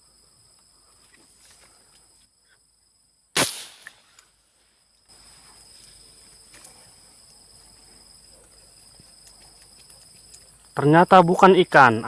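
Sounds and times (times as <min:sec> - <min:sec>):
airgun shot crack: 0:03.4 - 0:04.1.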